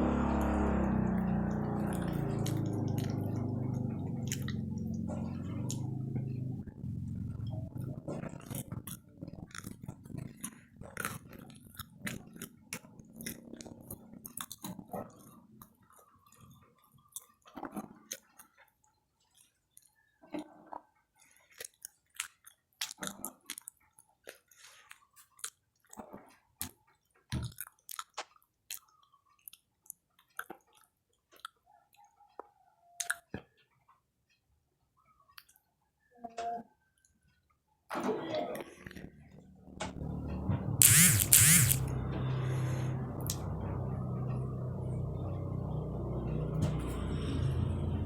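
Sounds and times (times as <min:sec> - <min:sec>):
crunchy chewing: 0:01.8 - 0:04.6, 0:07.9 - 0:14.8, 0:40.8 - 0:41.9.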